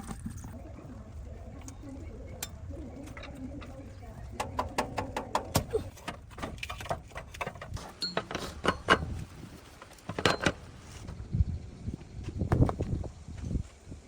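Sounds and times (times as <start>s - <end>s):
irregular knocks and clicks: 4.4s - 9.1s.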